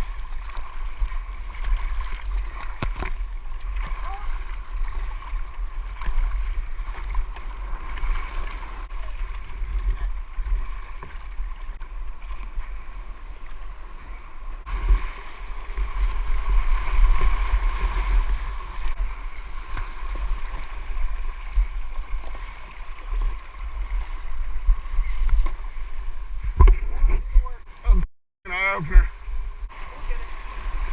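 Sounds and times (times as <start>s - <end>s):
sea water sloshing and gurgling: 0.0s - 30.9s.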